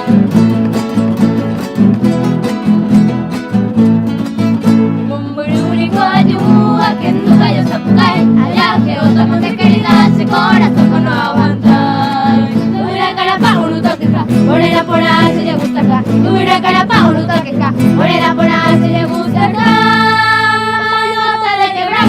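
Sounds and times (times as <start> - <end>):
plucked strings: 0.0 - 22.0
voices singing polka: 5.1 - 22.0.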